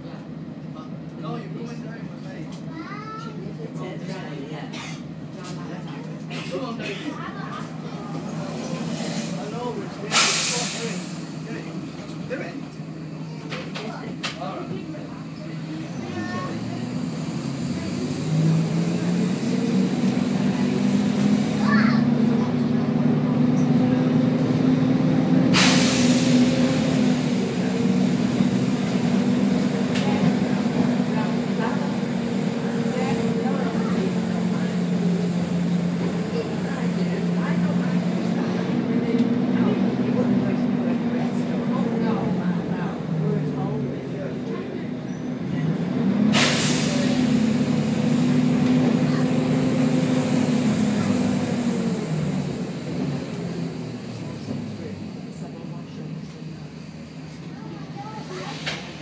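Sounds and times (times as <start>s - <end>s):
diesel bus engine running: 0.0s - 59.0s
compressed air hiss: 10.1s - 11.2s, 46.4s - 47.2s.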